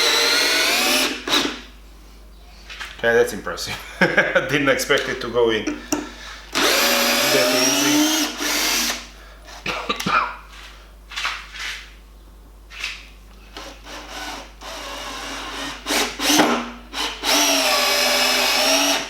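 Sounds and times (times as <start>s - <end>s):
cordless drill running: 0.0s - 1.6s, 6.5s - 9.1s, 13.6s - 19.0s.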